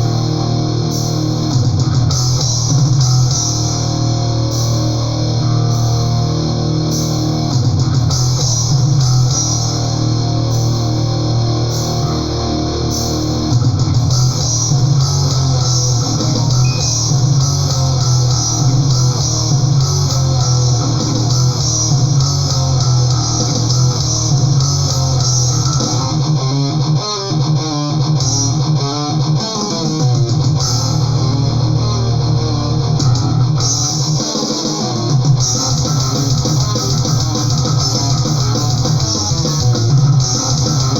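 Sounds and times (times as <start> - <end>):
metal music with distorted guitars: 0.0 - 40.9.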